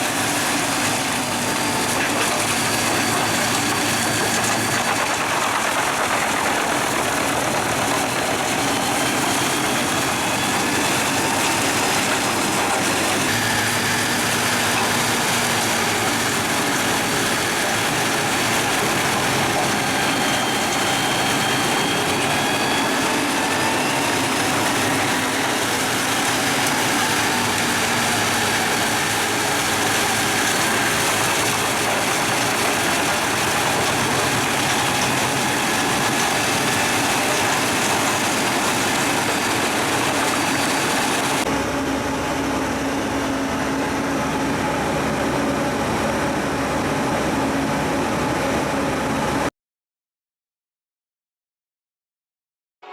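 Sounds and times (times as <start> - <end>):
wood chipper running: 0.0 - 49.5.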